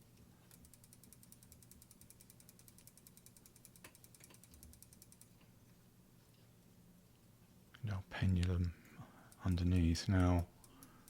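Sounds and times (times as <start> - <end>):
clock movement ratchet clicks: 0.5 - 5.4, 8.3 - 11.0.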